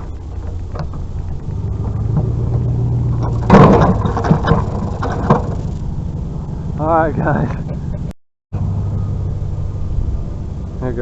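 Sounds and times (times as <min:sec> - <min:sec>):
loud clatter: 0:00.0 - 0:05.8
vehicle engine running: 0:00.0 - 0:11.0.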